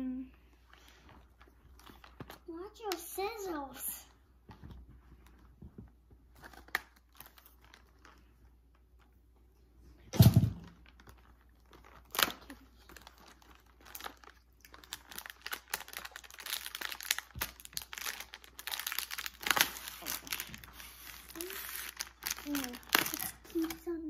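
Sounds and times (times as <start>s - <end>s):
plastic crinkling and tearing: 0.7s - 3.0s, 6.2s - 9.2s, 10.2s - 24.0s.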